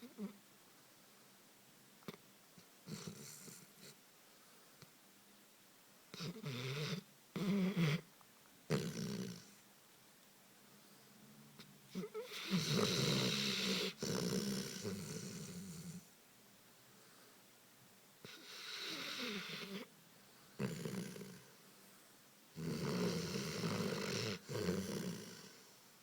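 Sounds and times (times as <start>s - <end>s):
dog snoring: 2.8s - 4.0s, 6.1s - 8.1s, 8.7s - 9.6s, 11.6s - 16.1s, 18.2s - 19.9s, 20.6s - 21.6s, 22.5s - 25.7s.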